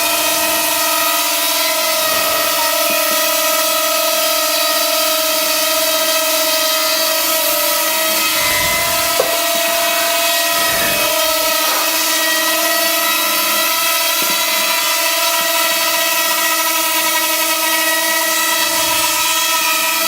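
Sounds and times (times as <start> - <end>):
drone propellers whining: 0.0 - 3.5, 7.5 - 13.4.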